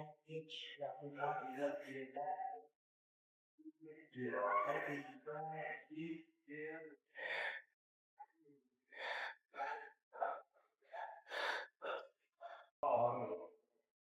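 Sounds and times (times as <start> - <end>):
person breathing hard: 7.2 - 7.7, 9.0 - 10.4, 11.2 - 12.7.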